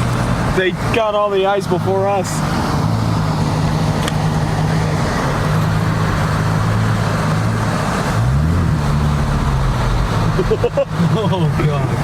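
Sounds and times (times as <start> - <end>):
car engine revving: 0.0 - 12.0.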